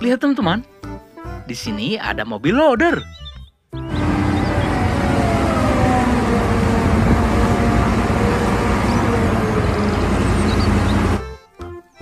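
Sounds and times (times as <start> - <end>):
heavy vehicle engine whining: 3.8 - 11.4.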